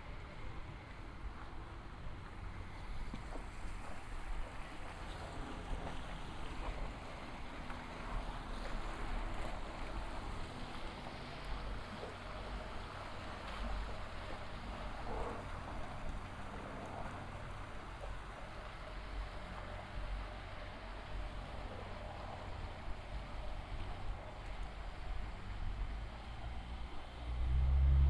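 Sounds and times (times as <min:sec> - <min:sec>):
low rumble: 0:27.3 - 0:28.0.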